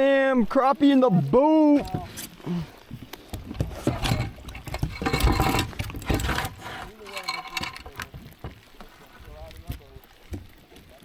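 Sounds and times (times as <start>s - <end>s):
handling clicks and rustling: 3.1s - 8.5s.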